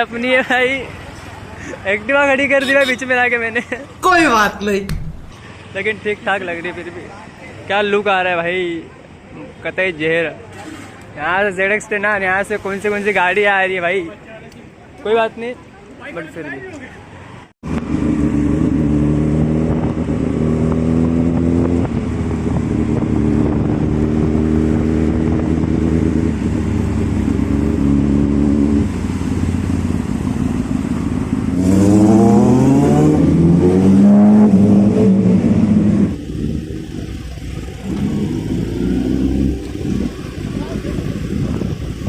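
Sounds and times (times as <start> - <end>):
motorcycle engine revving: 17.6 - 42.0
motorcycle engines running: 17.7 - 42.0.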